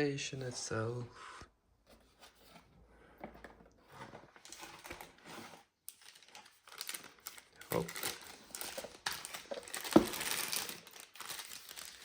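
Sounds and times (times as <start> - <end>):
packaging rustling: 3.8 - 12.0.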